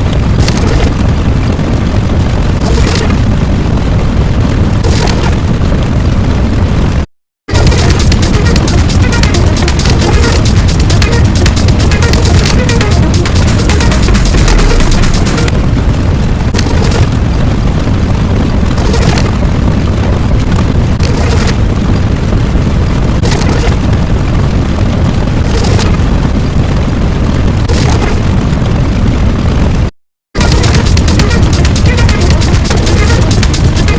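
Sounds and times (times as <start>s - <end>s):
low explosion rumble: 0.0s - 33.9s
sharp blasts: 7.5s - 17.1s, 30.4s - 33.9s.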